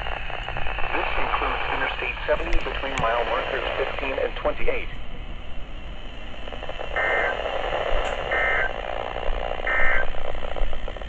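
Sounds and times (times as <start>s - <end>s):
radio hiss: 0.0s - 11.0s
warbling data tone bursts: 6.0s - 11.0s.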